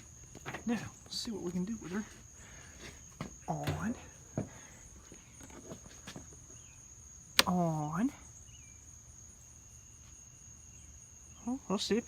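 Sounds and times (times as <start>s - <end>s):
crickets trilling: 0.0s - 12.0s
person speaking: 7.4s - 8.2s.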